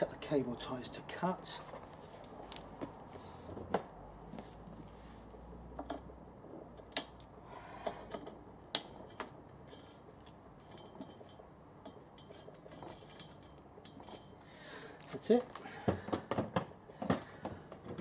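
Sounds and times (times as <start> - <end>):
cable ties snipped with cutters: 6.9 - 7.3.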